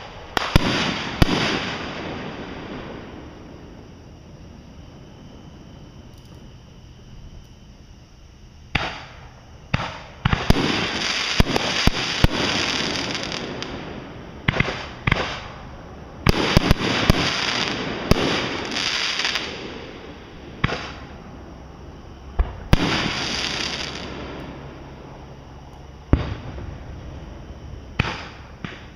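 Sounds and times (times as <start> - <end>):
fireworks bangs: 0.0 - 3.9, 8.7 - 21.2, 22.4 - 24.9, 26.1 - 28.9.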